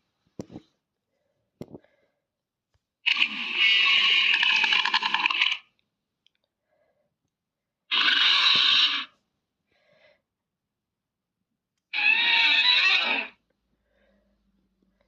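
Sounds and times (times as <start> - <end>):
monster rasping screeches: 3.1 - 5.6, 7.9 - 9.2, 11.9 - 13.4.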